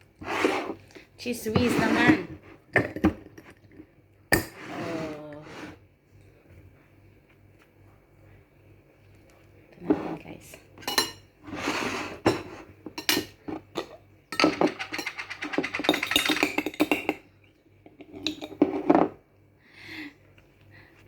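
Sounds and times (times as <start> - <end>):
utensils clinking on a plate: 10.8 - 17.3, 18.0 - 19.2.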